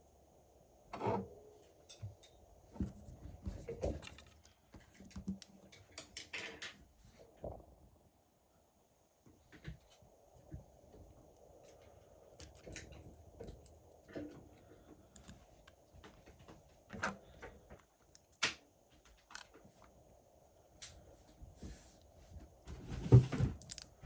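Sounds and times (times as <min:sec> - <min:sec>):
small tools clicking and tapping: 0:12.3 - 0:14.4, 0:15.0 - 0:19.9, 0:23.6 - 0:24.0.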